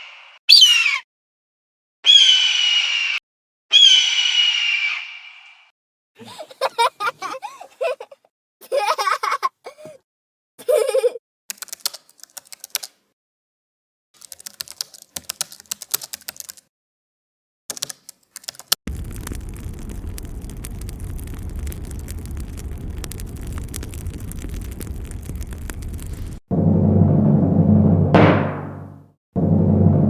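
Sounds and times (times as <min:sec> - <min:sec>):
low rumbling noise: 0:18.9 - 0:30.0.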